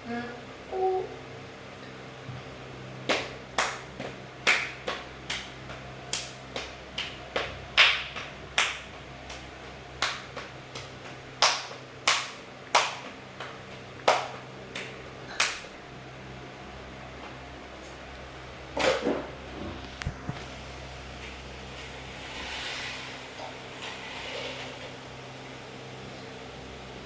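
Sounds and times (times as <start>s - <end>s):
low hum: 15.3s - 27.0s.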